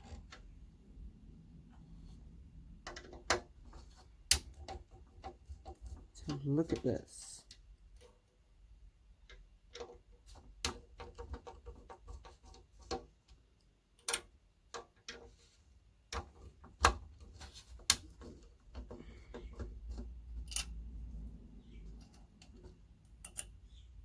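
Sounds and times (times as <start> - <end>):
tools clicking and knocking: 9.2 - 13.4, 16.1 - 20.8, 21.9 - 23.6.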